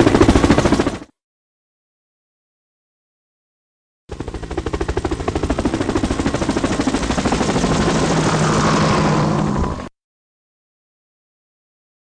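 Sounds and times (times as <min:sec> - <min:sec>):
helicopter rotor chopping: 0:00.0 - 0:01.1, 0:04.1 - 0:09.9
turbine whine: 0:07.1 - 0:09.9.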